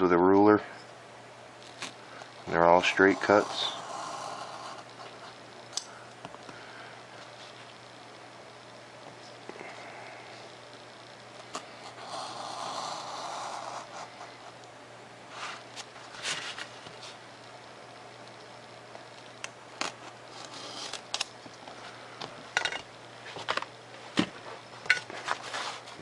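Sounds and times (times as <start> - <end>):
knife cutting foam: 11.8 - 14.2.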